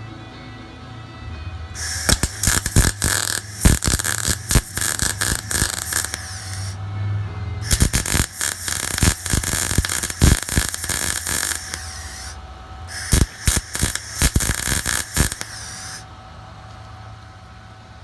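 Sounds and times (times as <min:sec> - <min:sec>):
welder arc crackling: 0:01.8 - 0:06.8, 0:07.6 - 0:16.1.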